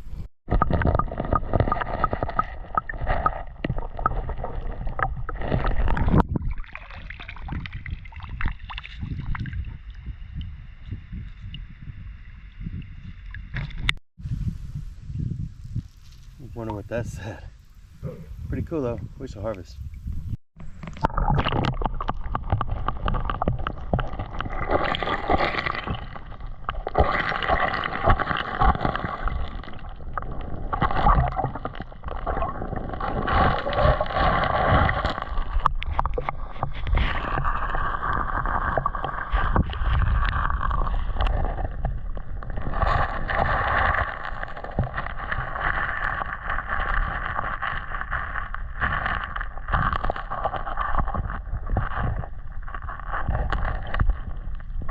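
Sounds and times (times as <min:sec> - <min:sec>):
wind buffeting microphone: 0:07.8 - 0:13.2, 0:14.2 - 0:20.4.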